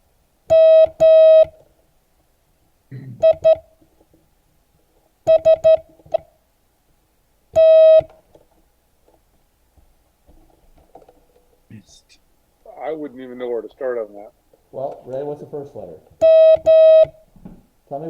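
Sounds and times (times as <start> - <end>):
morse code beeps: 0.5 - 1.6, 3.2 - 3.7, 5.3 - 6.2, 7.6 - 8.1, 16.2 - 17.2.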